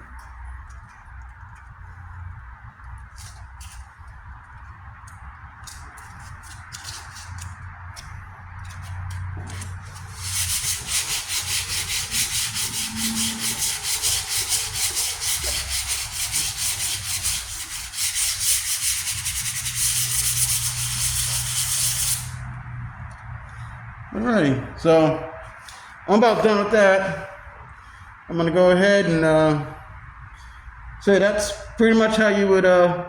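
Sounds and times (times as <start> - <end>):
sandpaper rubbing on metal: 9.5 - 22.4.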